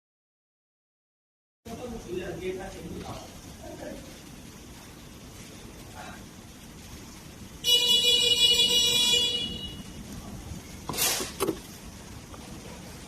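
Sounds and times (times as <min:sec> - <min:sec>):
rustling or scraping noises: 0:10.8 - 0:13.0.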